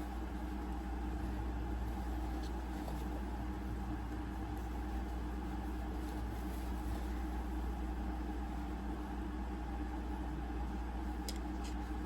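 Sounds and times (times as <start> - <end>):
low mechanical hum: 0.0 - 12.0.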